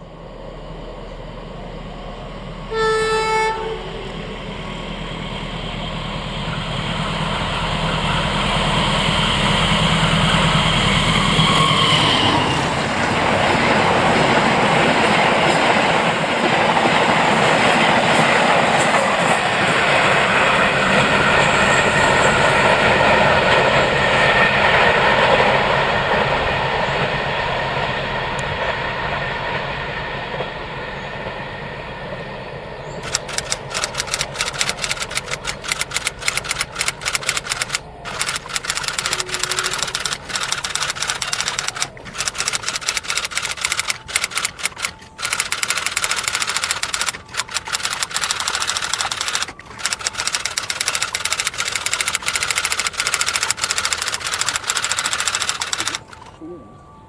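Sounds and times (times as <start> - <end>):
diesel locomotive engine: 0.0 - 57.0
train horn blast: 2.6 - 13.3, 39.1 - 40.1
train wheels clattering over rails: 4.4 - 56.3.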